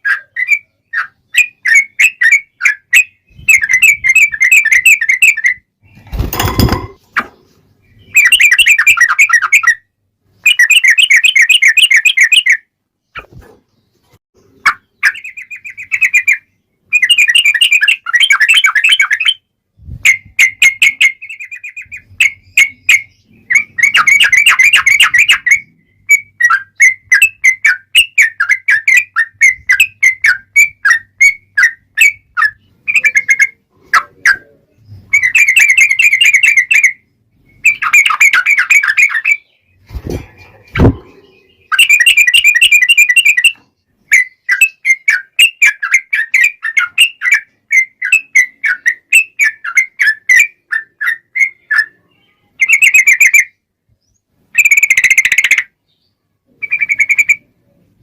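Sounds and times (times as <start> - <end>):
brief thump: 40.0 - 41.2.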